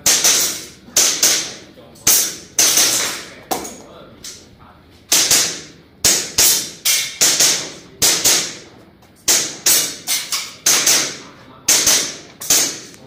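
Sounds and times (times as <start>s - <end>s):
airsoft pistol shots: 0.0s - 3.3s, 5.1s - 8.6s, 9.3s - 12.9s.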